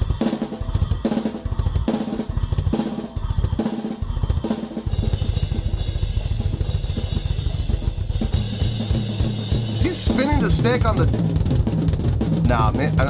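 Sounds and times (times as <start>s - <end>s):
rapid bass drum strokes: 0.0s - 13.0s
heavy drum hits: 4.3s - 13.0s.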